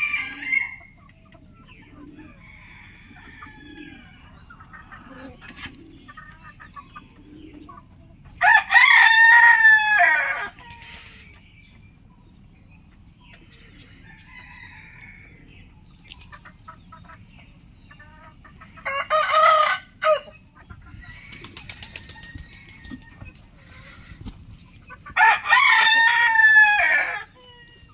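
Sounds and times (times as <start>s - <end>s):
faint chicken calls: 0.0s - 27.9s
rooster crowing: 8.4s - 10.6s, 25.2s - 27.3s.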